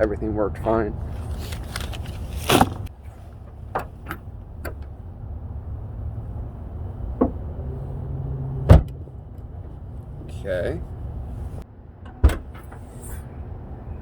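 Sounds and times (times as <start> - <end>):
loud latch thump: 8.6 - 9.0, 12.1 - 12.8.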